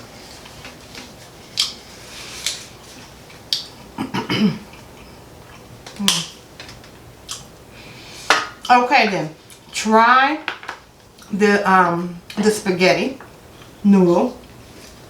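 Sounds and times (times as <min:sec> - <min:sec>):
person humming: 0:06.0 - 0:06.4.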